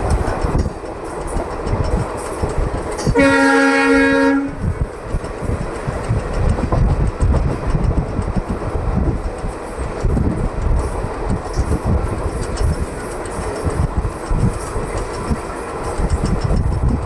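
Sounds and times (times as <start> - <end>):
train rumble and clickety-clack: 0.0 - 17.0
locomotive air horn blast: 3.1 - 4.6.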